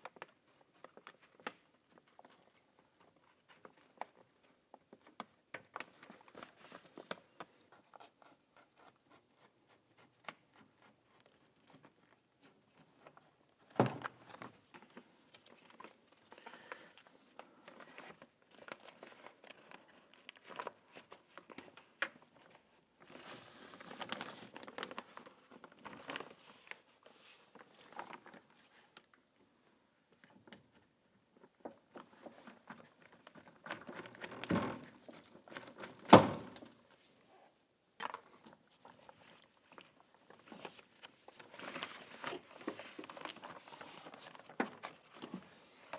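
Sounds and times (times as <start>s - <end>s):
plastic sheet crinkling: 13.9s - 29.0s, 38.0s - 45.9s.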